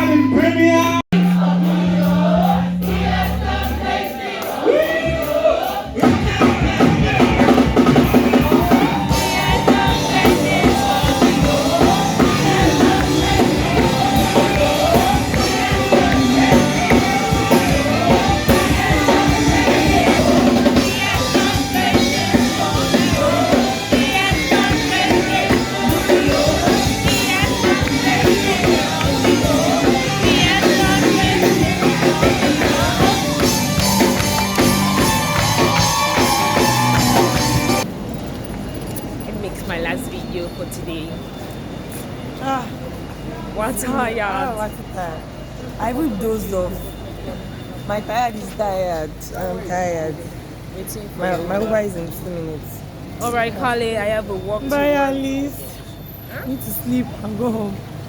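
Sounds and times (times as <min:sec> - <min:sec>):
voices singing: 0:00.0 - 0:37.9, 0:41.9 - 0:47.1, 0:50.3 - 0:58.0
band playing worship music: 0:00.0 - 0:38.2
drum kit: 0:00.9 - 0:37.9.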